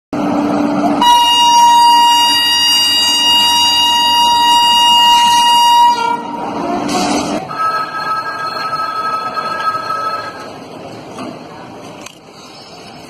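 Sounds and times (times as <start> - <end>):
locomotive air horn blast: 1.0 - 7.4.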